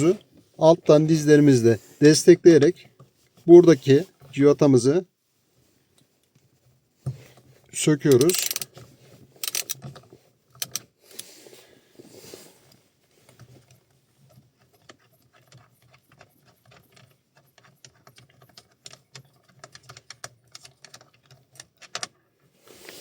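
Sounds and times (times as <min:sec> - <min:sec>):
ratchet clicking: 0:08.1 - 0:08.7, 0:09.4 - 0:09.8, 0:10.6 - 0:11.2.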